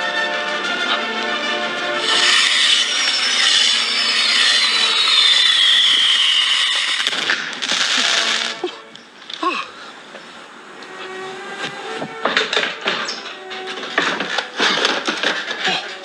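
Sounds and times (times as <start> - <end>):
small cracks: 0.6 - 16.0
firework hissing and whistling: 2.0 - 16.0.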